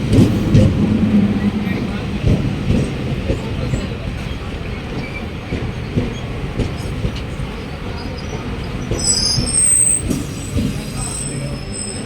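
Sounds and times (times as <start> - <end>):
electric train rumbling on rails: 0.0 - 12.0
high-pitched wheel squeal: 8.2 - 10.1, 11.0 - 12.0.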